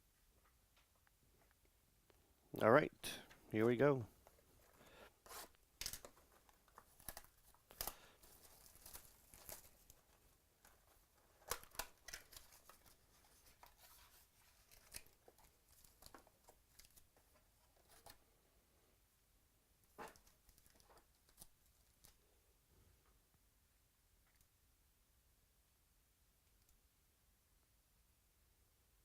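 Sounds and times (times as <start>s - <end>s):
card packs tearing and crinkling: 5.3s - 10.0s, 11.4s - 14.0s.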